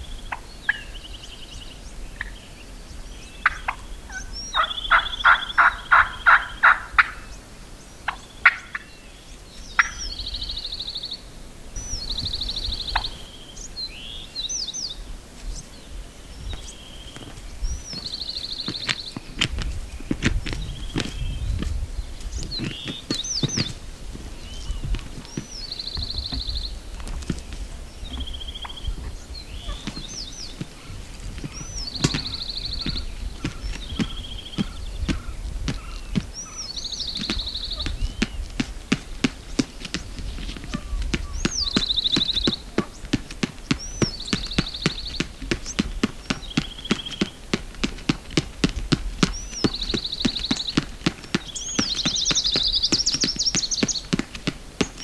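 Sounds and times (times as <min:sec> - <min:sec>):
songbird singing: 0:00.0 - 0:55.0
footsteps on stony ground: 0:14.7 - 0:55.0.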